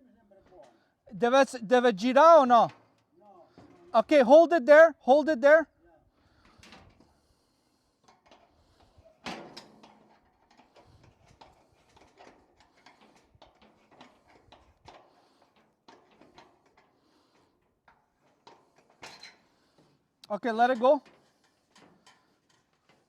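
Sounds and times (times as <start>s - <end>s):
parts clicking and knocking: 8.0s - 23.0s.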